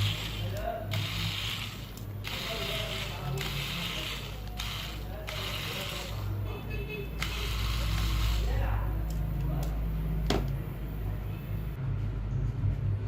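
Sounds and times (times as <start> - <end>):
ratchet-like clicking: 0.0 - 6.4, 7.2 - 9.2.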